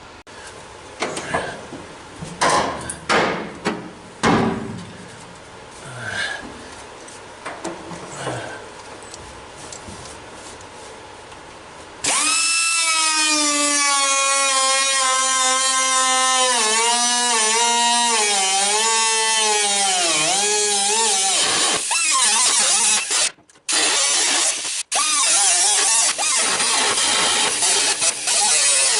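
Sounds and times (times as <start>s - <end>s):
air cut-off tool whining: 12.0s - 28.9s
cutting wheel biting into steel: 12.0s - 28.9s.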